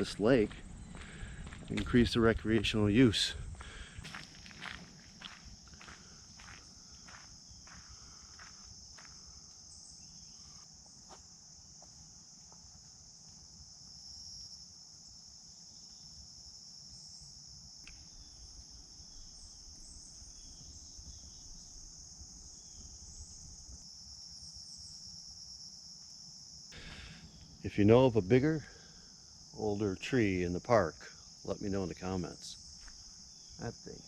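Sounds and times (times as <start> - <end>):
faint footsteps: 0.0 - 9.6, 32.7 - 33.2
shrill insect chorus: 0.0 - 34.0.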